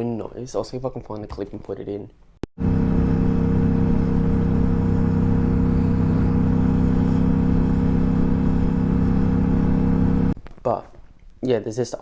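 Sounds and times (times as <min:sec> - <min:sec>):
motorcycle engine drone: 0:02.6 - 0:10.4.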